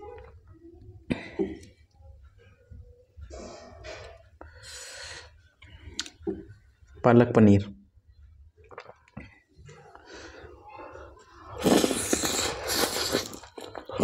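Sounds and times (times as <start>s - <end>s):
loud breaths: 4.4s - 5.9s
person eating: 8.6s - 10.1s, 11.0s - 14.0s.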